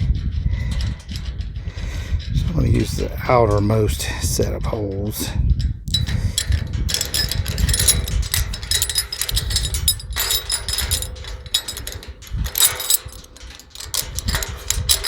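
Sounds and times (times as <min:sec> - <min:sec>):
metal latch clinking and rattling: 0:05.9 - 0:15.0.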